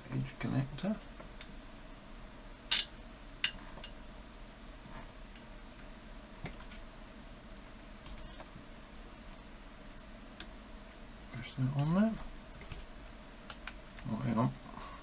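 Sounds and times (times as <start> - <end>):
small parts clicking and tapping: 2.7 - 4.0.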